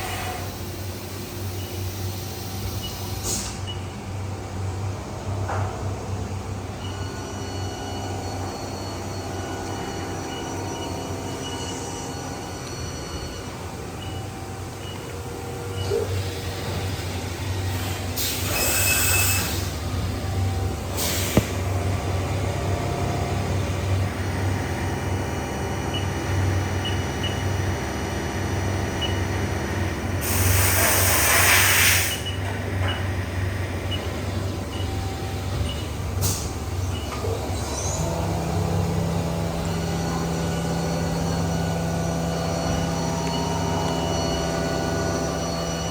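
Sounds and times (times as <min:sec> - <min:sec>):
machine high-pitched whine: 0:05.5 - 0:45.9
faint high beeps: 0:06.8 - 0:15.1
loud hiss: 0:30.2 - 0:32.2
low machine hum: 0:32.2 - 0:45.9.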